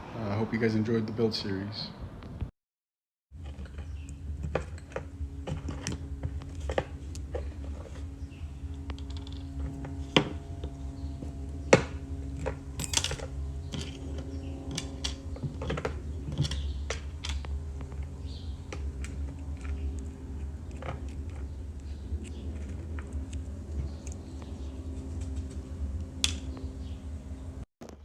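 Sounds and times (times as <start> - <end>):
steady low hum: 3.4 - 27.6
hand tools clicking and tapping: 12.8 - 13.2.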